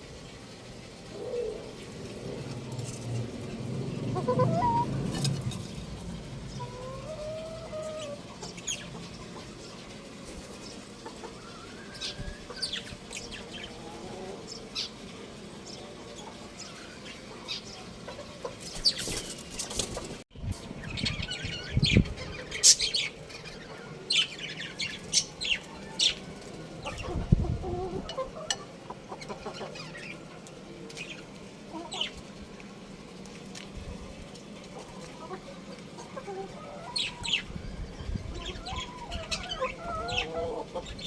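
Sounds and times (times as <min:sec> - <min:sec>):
chickens chirping: 0:01.1 - 0:32.5, 0:34.3 - 0:41.0
rooster clucking: 0:04.2 - 0:05.3.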